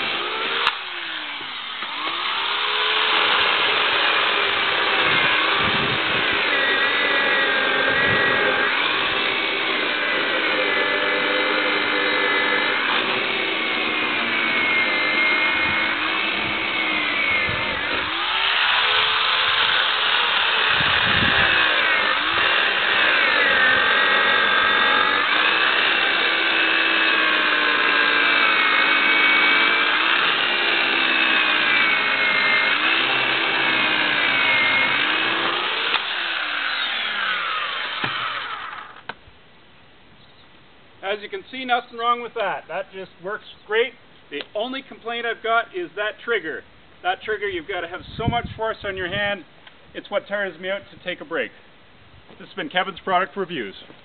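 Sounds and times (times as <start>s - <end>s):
electric chainsaw cutting wood: 0.0s - 39.2s.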